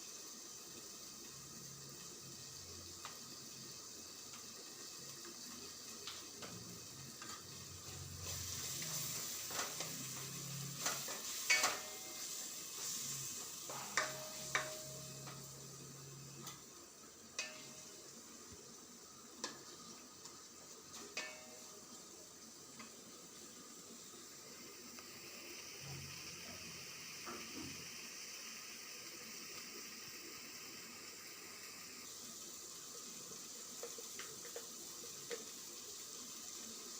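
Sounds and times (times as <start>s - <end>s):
sauce sizzling in a pan: 0.0s - 36.9s
spoon knocking against pan: 11.5s - 12.1s, 13.7s - 15.5s.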